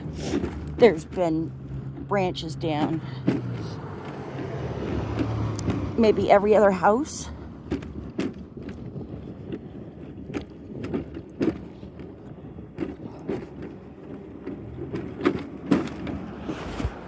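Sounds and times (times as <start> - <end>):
road rumble inside car: 0.0 - 17.0
knocks and clicks: 0.3 - 6.7, 7.6 - 9.6.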